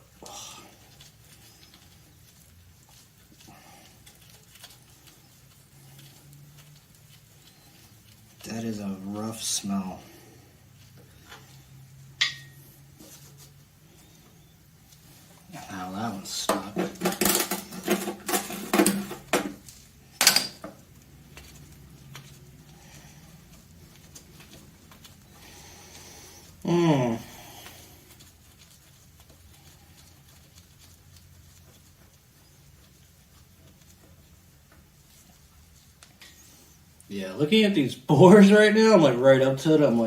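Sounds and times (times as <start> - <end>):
faint handling ticks: 0.0 - 16.8, 20.8 - 37.8
hand tools clinking on metal: 20.2 - 20.7.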